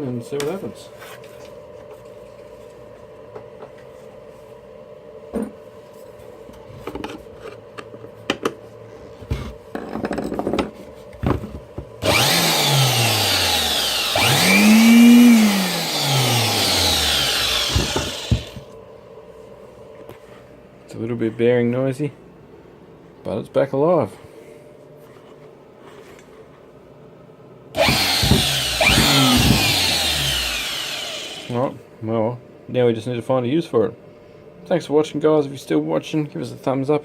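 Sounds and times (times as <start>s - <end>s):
electric blower whining: 12.0s - 18.7s, 27.8s - 31.6s.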